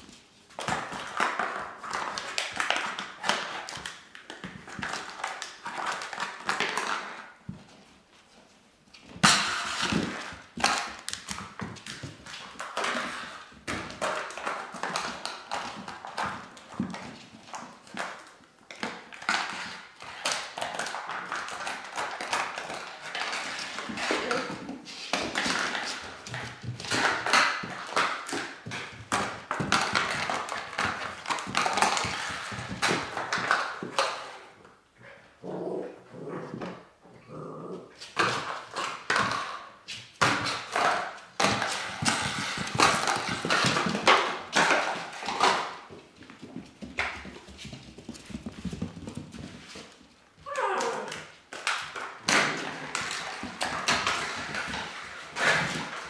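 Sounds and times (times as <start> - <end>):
puppy scuffs and taps: 38.0 - 56.0.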